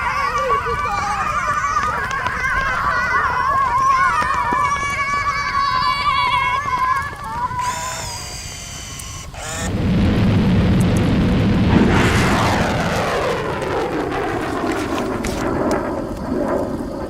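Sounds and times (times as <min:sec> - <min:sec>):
rocket rumble: 0:09.3 - 0:17.0
whoosh falling in pitch: 0:09.4 - 0:14.7.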